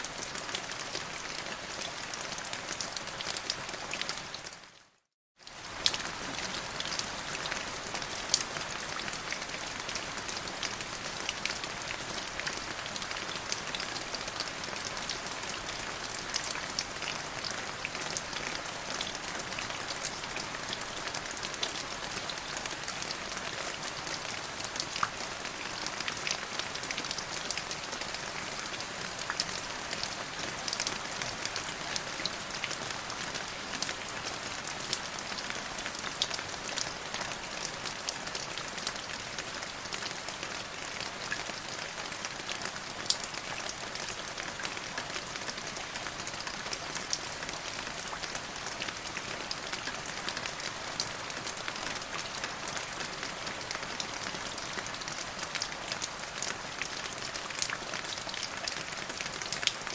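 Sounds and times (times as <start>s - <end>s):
rain pattering on leaves: 5.4s - 59.9s.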